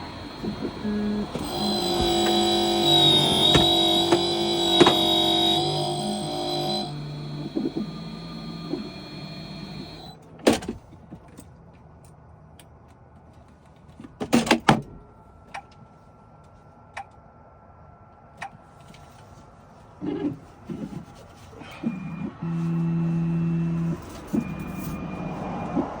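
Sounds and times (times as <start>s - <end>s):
key-cutting machine motor hum: 0.0s - 10.2s.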